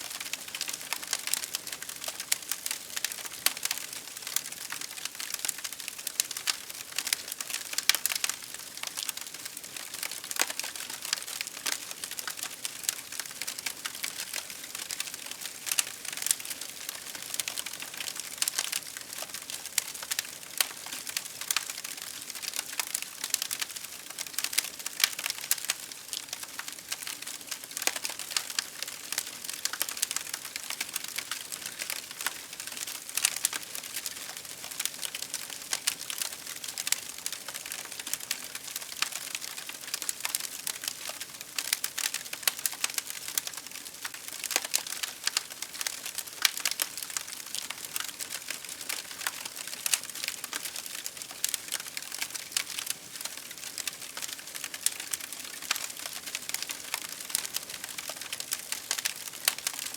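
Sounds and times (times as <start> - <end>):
wood fire crackling: 0.1 - 59.9.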